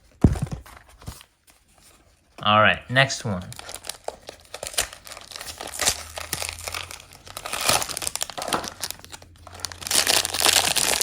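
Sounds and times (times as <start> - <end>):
packaging crinkling and tearing: 3.3 - 11.0.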